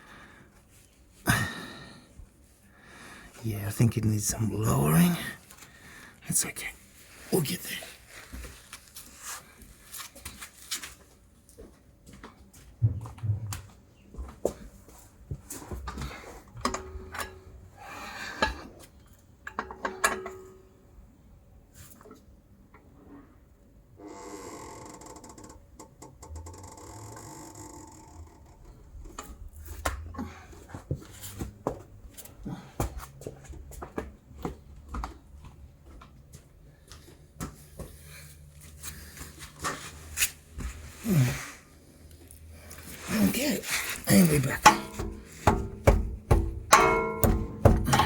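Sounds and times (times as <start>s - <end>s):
metallic clicks and clanks: 19.5s - 20.5s, 44.6s - 48.0s.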